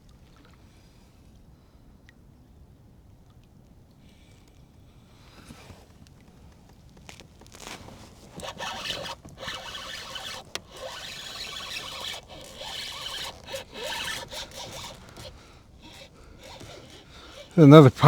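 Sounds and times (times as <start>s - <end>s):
fishing reel whirring: 7.6s - 18.0s.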